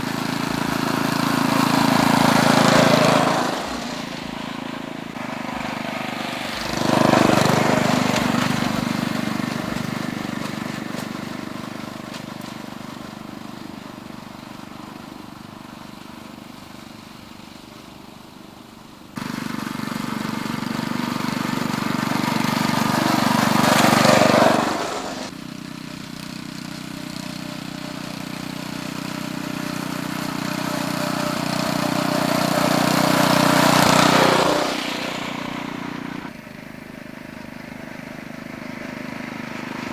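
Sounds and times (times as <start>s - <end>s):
miniature train passing on track: 0.0s - 39.9s.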